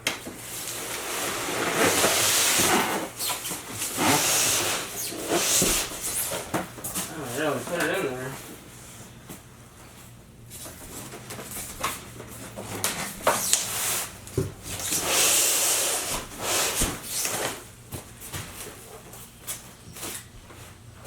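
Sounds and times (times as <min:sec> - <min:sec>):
packaging rustling scrape: 0:00.5 - 0:07.9.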